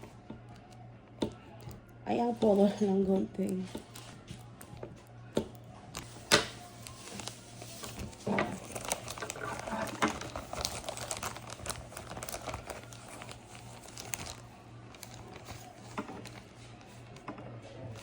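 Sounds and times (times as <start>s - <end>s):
plastic packaging crinkling and tearing: 5.9s - 18.0s.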